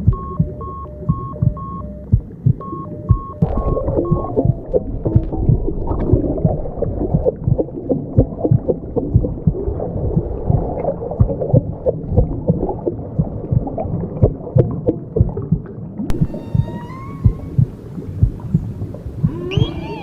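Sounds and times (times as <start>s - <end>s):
irregular knocks and pulses: 0.0s - 6.5s, 15.2s - 20.0s
muffled low rumble: 0.0s - 20.0s.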